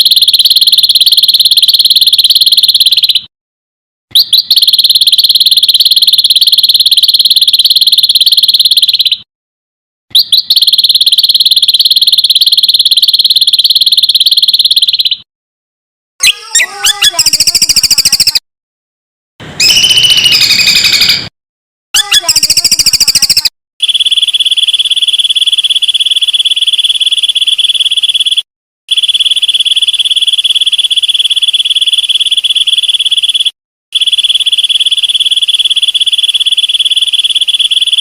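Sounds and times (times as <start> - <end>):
chattering bird call: 16.2 - 18.4.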